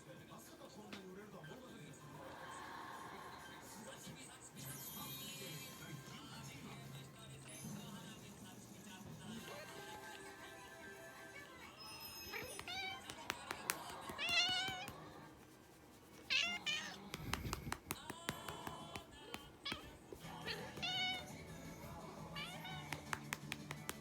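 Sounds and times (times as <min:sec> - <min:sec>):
cat meowing: 0:11.4 - 0:15.0, 0:16.3 - 0:17.3, 0:19.6 - 0:23.2
hand patting cat smacks: 0:12.4 - 0:15.2, 0:16.5 - 0:24.0.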